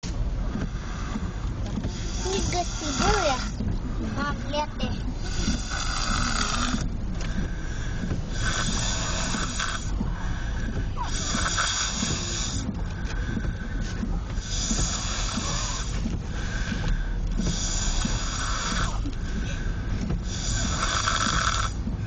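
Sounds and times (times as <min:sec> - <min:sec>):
steady low rumble: 0:00.0 - 0:22.0
person snoring: 0:05.2 - 0:06.8, 0:11.0 - 0:12.6, 0:20.4 - 0:21.8.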